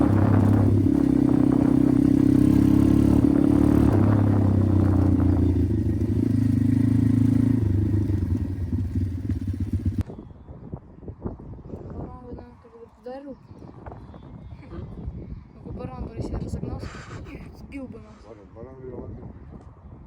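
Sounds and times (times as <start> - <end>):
pit bike engine running: 0.0 - 10.0.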